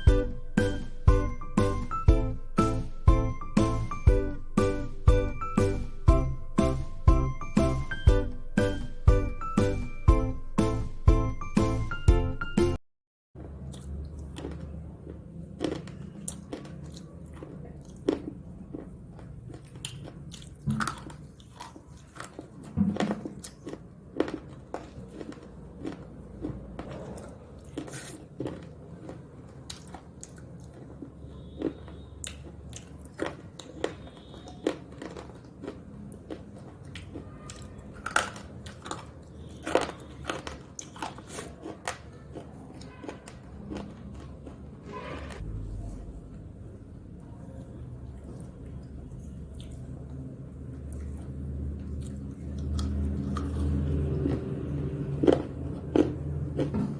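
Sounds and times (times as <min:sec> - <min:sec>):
low background hum: 0:13.4 - 0:56.9
crunchy snack being chewed: 0:13.6 - 0:44.7, 0:50.8 - 0:56.9.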